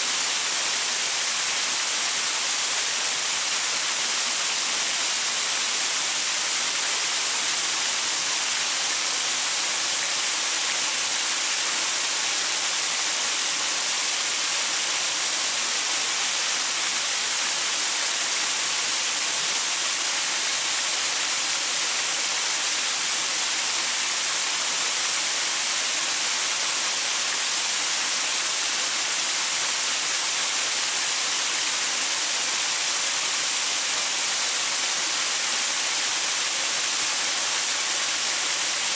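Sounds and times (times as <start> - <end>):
waterfall pouring over rocks: 0.0 - 38.9.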